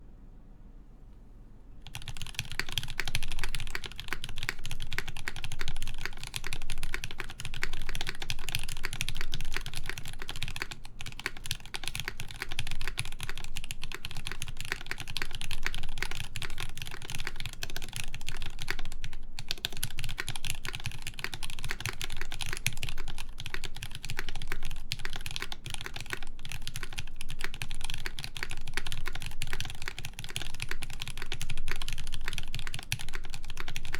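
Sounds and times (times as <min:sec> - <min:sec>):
fast mechanical keyboard typing: 0:01.8 - 0:33.9.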